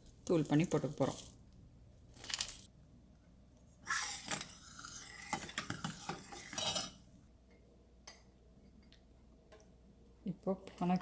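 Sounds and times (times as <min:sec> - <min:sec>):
utensils scraping a metal pan: 0:03.8 - 0:07.1.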